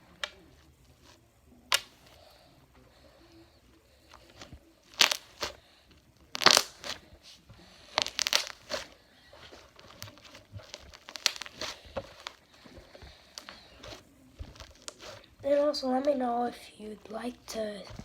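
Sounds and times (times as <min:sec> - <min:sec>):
slime crackling and popping: 0:00.0 - 0:02.2, 0:04.1 - 0:07.1, 0:07.7 - 0:15.4.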